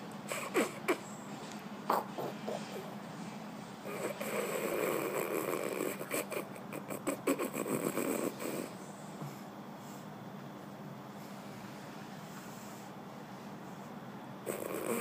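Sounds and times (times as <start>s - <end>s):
long rattling snore: 3.9s - 8.7s, 14.4s - 15.0s.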